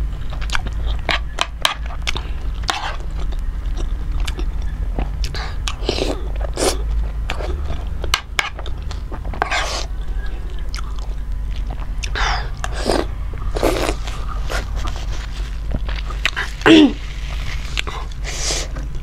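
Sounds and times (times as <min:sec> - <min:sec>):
chewing and biting food: 0:00.1 - 0:19.0
breathy bursts: 0:12.2 - 0:13.0.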